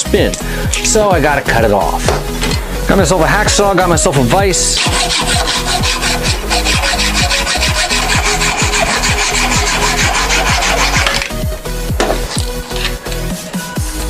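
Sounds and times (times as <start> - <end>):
music with thumping beat: 0.0 - 14.0
hacksaw cutting metal: 4.1 - 11.3.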